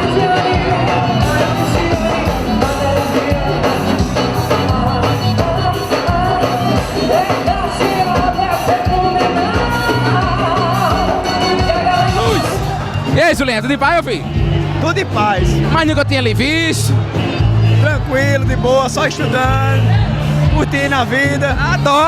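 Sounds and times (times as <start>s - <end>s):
person singing: 0.0s - 12.8s
band playing: 0.0s - 22.0s
steady percussion beat: 0.0s - 22.0s.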